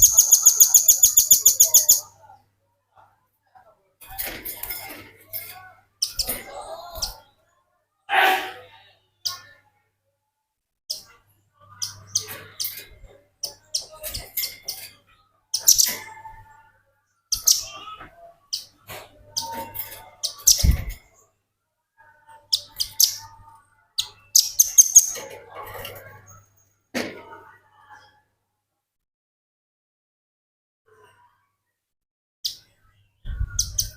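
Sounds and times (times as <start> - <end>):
bird high chipping calls: 0.0 - 2.1, 24.0 - 25.2.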